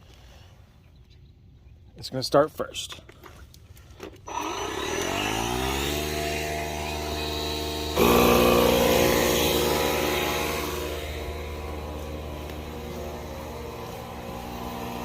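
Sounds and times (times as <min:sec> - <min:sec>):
tire inflator motor humming: 0:04.2 - 0:15.0
second tire inflator louder: 0:04.3 - 0:15.0.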